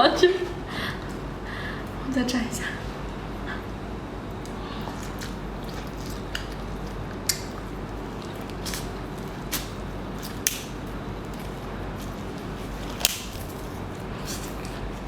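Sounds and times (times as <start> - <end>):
steady low hum: 0.0 - 15.0
wet chewing smacks: 4.4 - 15.0.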